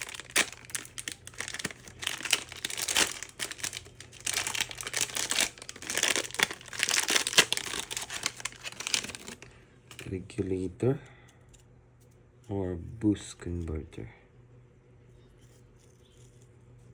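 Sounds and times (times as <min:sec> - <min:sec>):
packaging crinkling: 0:00.0 - 0:10.1.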